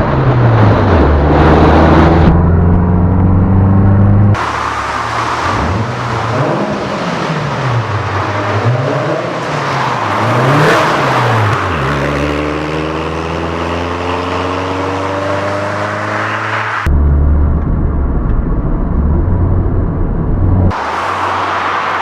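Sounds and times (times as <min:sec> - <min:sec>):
car engine revving: 0:00.0 - 0:22.0.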